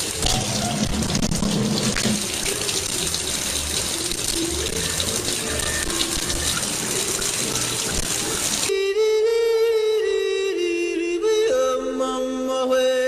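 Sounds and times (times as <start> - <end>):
water running from a tap: 0.0 - 8.7.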